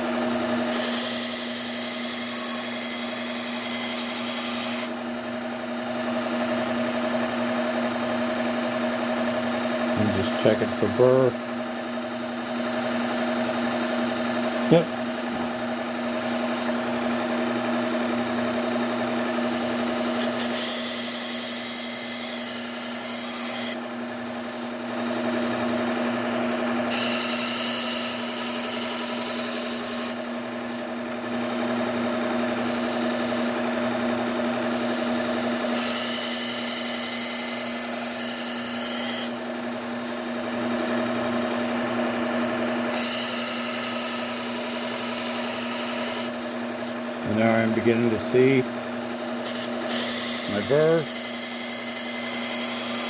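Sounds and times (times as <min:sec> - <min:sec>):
belt sander motor hum: 0:00.0 - 0:53.0
knife blade grinding on belt: 0:00.7 - 0:04.9, 0:20.2 - 0:23.8, 0:49.4 - 0:53.0.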